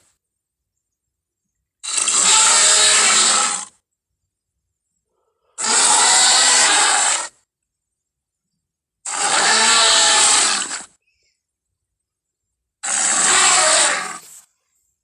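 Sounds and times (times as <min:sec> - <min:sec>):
dinosaur roar: 0:09.1 - 0:10.9, 0:12.8 - 0:14.2.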